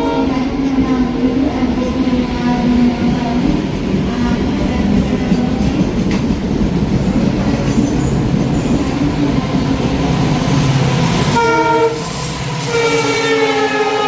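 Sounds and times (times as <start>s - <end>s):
train horn blast: 0.0s - 0.5s, 11.2s - 14.0s
locomotive engine and wheels rumble: 0.3s - 14.0s.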